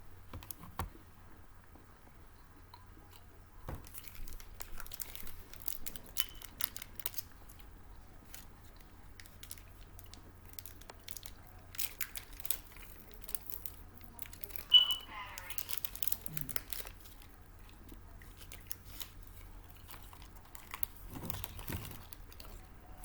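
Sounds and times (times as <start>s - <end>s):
plastic wrapper crinkling: 3.7s - 23.0s.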